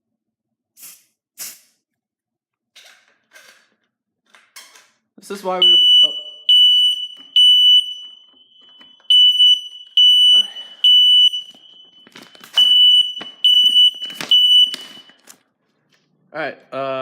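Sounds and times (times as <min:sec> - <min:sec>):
smoke alarm beeping: 0:05.6 - 0:15.4.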